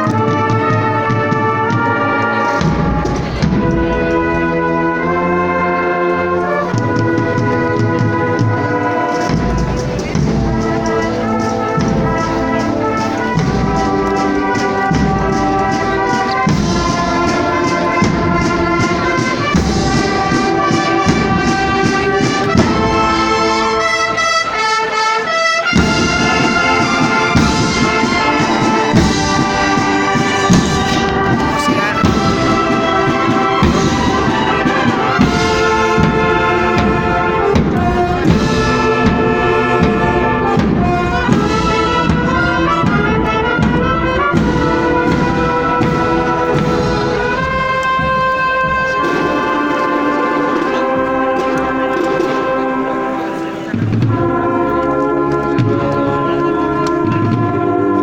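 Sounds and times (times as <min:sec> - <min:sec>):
brass and drums marching band: 0:00.0 - 0:58.0.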